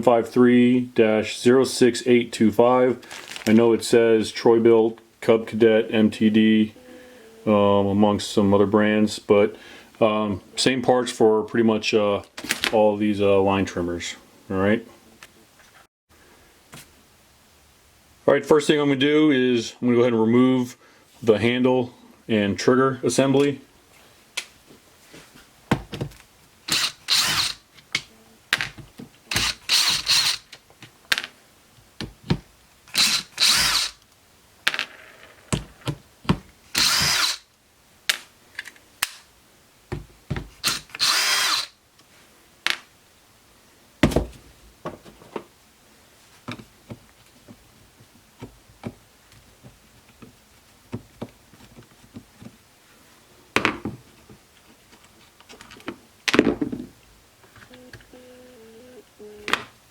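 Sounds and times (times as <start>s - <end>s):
cordless drill running: 26.7s - 27.7s, 29.3s - 30.5s, 32.9s - 34.0s, 36.8s - 37.4s, 40.6s - 41.8s
screws and plastic parts clicking: 26.7s - 30.6s, 32.9s - 34.2s, 36.8s - 37.4s, 40.6s - 41.7s.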